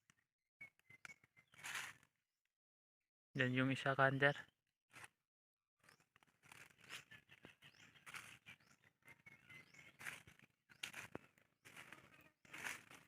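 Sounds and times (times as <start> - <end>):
faint bird chirps: 0.1 - 2.1, 6.5 - 12.9
footsteps through dry leaves: 1.6 - 2.0, 6.3 - 8.8, 9.6 - 13.0.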